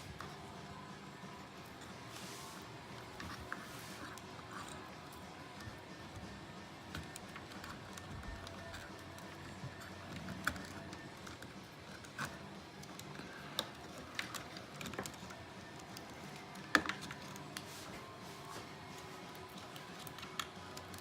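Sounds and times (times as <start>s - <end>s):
small clicks and taps of parts: 6.9s - 17.7s.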